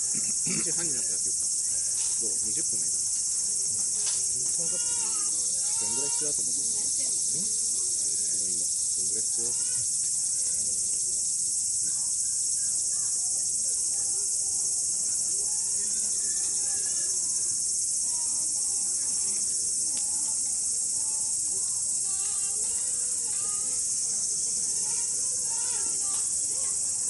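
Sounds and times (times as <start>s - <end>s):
crickets and night insects trilling: 0.0s - 27.0s
faint voices talking: 0.0s - 27.0s.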